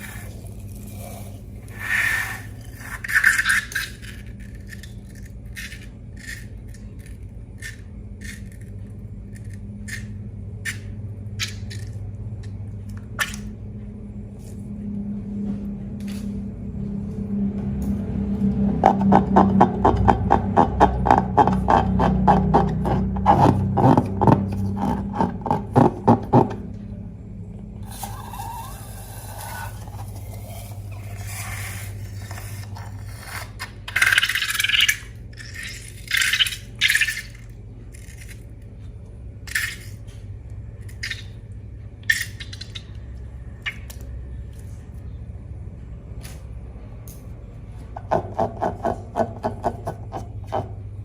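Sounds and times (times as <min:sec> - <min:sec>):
scraping and rubbing of slime: 0:00.0 - 0:10.1, 0:18.6 - 0:26.4, 0:27.9 - 0:37.4
steady low hum: 0:00.0 - 0:51.0.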